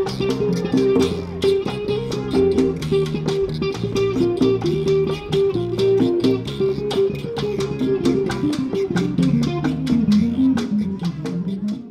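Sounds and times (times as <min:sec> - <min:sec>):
steady drum beat: 0:00.0 - 0:11.8
bass guitar: 0:00.0 - 0:11.9
electric guitar: 0:00.0 - 0:11.9.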